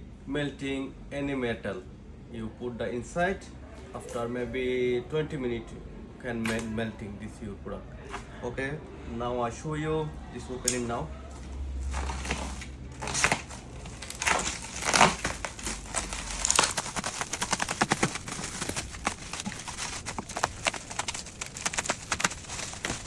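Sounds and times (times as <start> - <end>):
packaging crinkling and rustling: 11.4 - 23.0.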